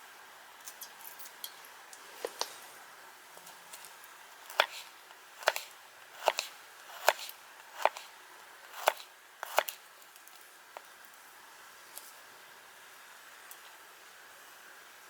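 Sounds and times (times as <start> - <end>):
knife cutting food: 4.5 - 8.1, 8.7 - 9.8.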